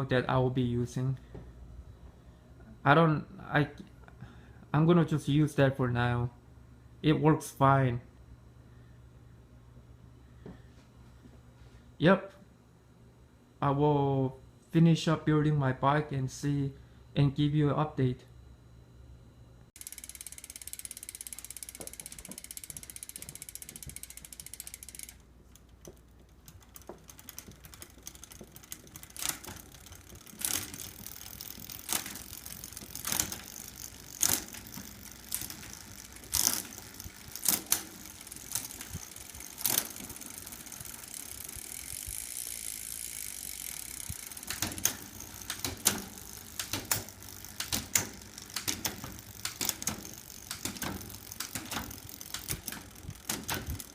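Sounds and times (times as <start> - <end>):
freewheel ratchet buzzing: 19.8 - 53.9
sharp mechanical clicks: 19.8 - 53.9.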